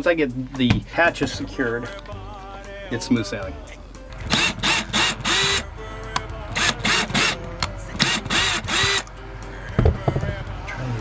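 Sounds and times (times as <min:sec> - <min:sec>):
cordless drill whirring: 0:04.2 - 0:09.1.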